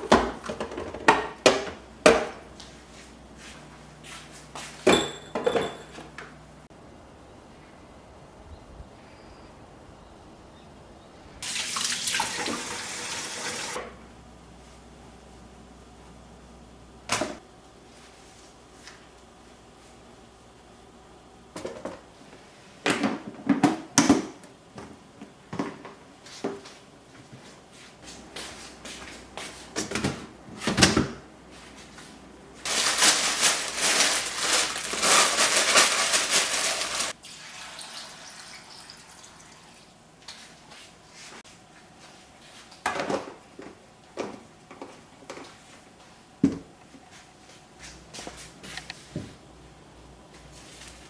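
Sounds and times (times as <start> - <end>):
dishes knocking and clinking: 4.8 - 6.2
kitchen tap running: 11.4 - 13.8, 32.7 - 39.9.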